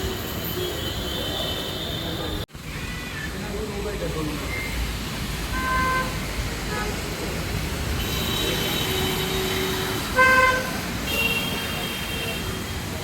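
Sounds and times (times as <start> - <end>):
road traffic: 0.0 - 13.0
vehicle horns honking: 5.5 - 7.0, 8.0 - 12.9.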